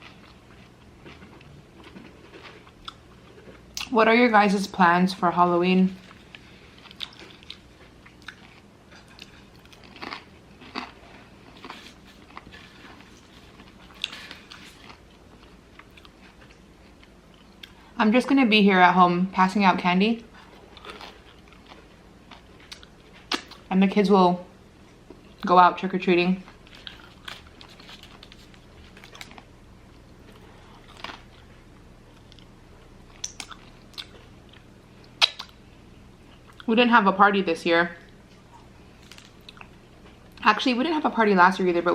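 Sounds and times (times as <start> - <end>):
person chewing food: 0.0 - 3.9, 6.0 - 18.0, 20.2 - 23.7, 26.5 - 36.7, 38.1 - 40.4.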